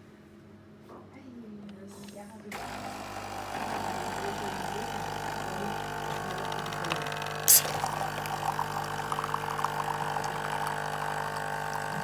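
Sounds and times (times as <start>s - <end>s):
coffee machine humming: 2.5s - 12.0s
sharp loud noise: 7.4s - 8.3s.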